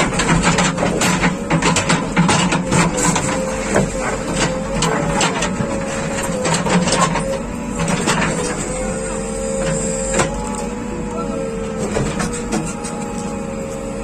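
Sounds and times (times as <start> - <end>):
sharp clanks and knocks: 0.0 - 8.6
backhoe engine droning: 0.0 - 14.0
hydraulic whine: 0.0 - 14.0.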